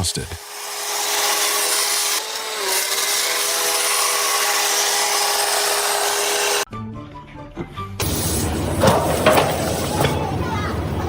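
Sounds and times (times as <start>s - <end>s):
power tool whining: 0.0s - 6.7s.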